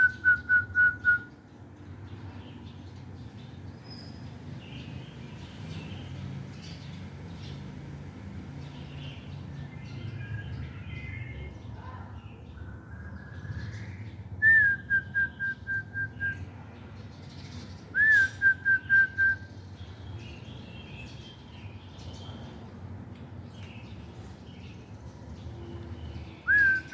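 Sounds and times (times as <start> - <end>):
small birds chirping: 0.0 - 26.9
person whistling phrases: 26.5 - 26.9.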